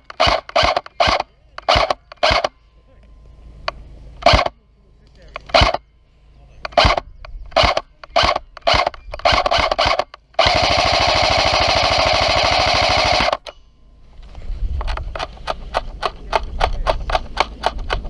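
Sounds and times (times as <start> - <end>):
airsoft gun firing: 0.0 - 2.5, 4.2 - 4.5, 5.4 - 5.8, 6.7 - 13.6, 14.8 - 18.0.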